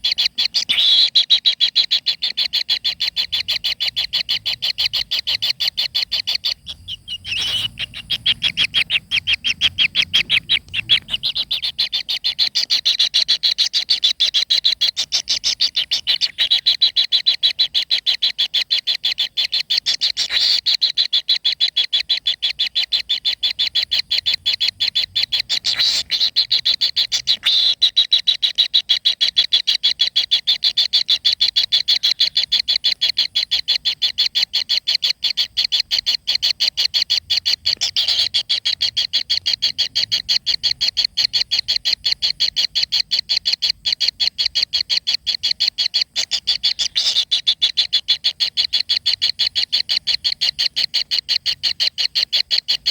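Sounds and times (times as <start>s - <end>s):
high-pitched pulsed animal trill: 5.0s - 12.3s.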